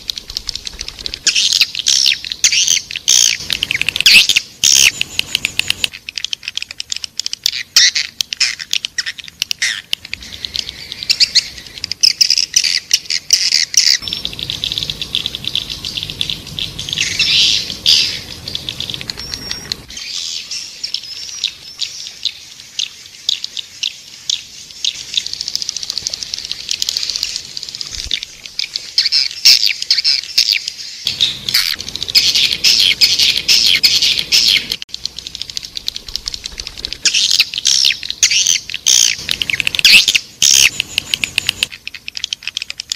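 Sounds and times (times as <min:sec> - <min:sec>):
background noise: 0:00.0 - 0:42.9
swiftlets chirping: 0:23.3 - 0:42.9.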